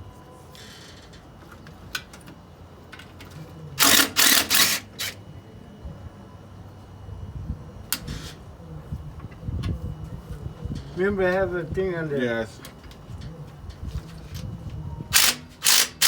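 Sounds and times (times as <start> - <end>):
impact wrench hammering: 3.8 - 5.1, 15.2 - 16.0.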